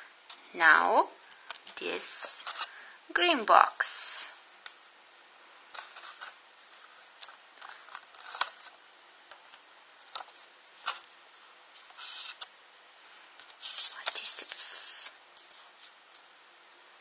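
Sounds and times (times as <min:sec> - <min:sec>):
cardboard rustling: 0:05.7 - 0:08.8.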